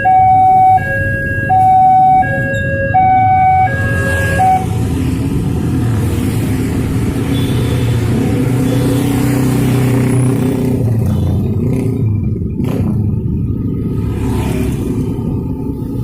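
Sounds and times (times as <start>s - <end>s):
vehicle engines accelerating: 0.0s - 16.0s.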